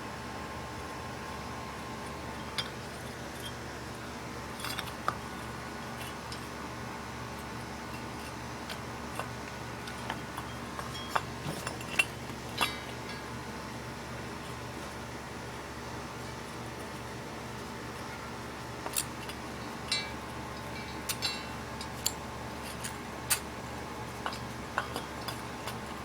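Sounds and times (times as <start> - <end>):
metal parts clinking: 18.9 - 23.4.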